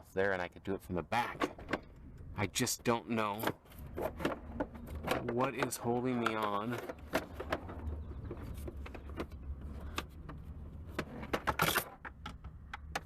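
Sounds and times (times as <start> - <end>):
low steady rumble: 0.0 - 6.1, 6.9 - 13.0
dashboard trim clicking and knocking: 3.4 - 13.0.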